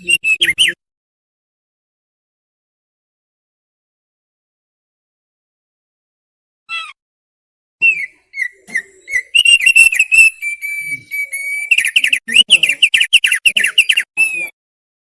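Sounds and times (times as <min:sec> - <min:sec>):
bird whistling song: 0:00.0 - 0:00.8, 0:07.8 - 0:14.5.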